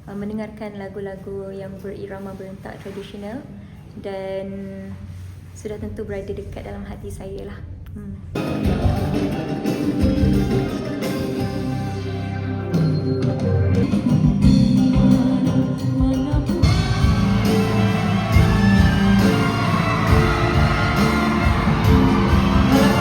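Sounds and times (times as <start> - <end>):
person singing: 8.4 - 12.7, 13.8 - 23.0
traditional orchestra playing: 16.6 - 23.0.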